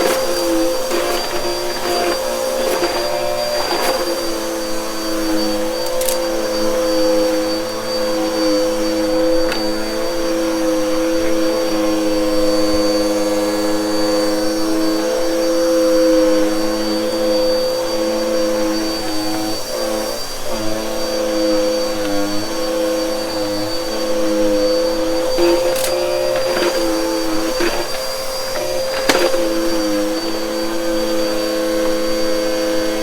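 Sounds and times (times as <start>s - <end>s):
vacuum cleaner running: 0.0s - 33.0s.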